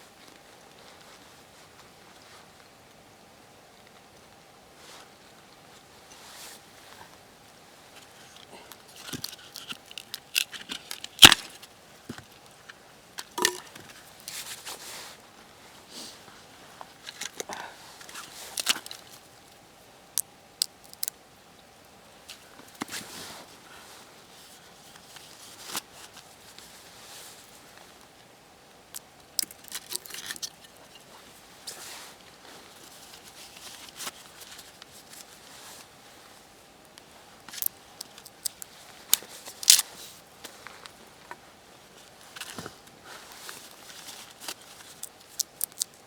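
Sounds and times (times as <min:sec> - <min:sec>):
wood snapping and tearing by hand: 0:08.7 - 0:11.7, 0:18.2 - 0:19.1, 0:20.6 - 0:21.1, 0:44.9 - 0:46.0.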